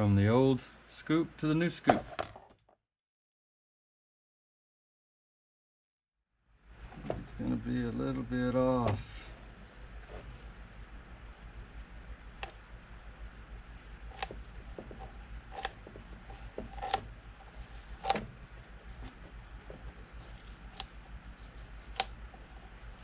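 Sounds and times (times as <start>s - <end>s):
faint low hum: 6.5s - 23.0s.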